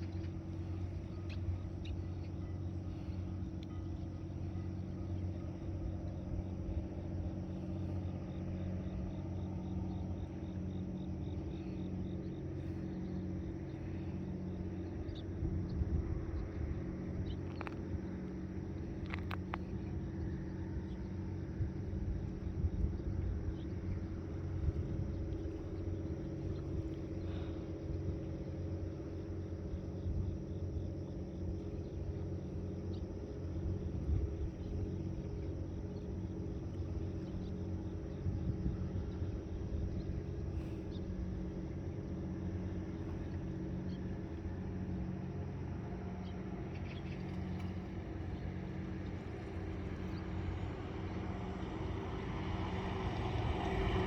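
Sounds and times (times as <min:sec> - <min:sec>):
engine running with low hum: 0:00.0 - 0:54.0
faint ticks: 0:03.5 - 0:04.0, 0:18.8 - 0:19.9.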